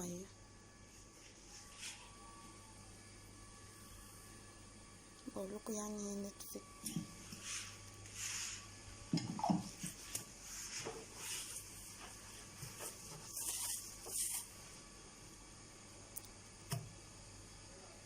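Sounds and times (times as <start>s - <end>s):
wiping swishes on countertop: 7.2s - 8.7s, 9.4s - 14.6s.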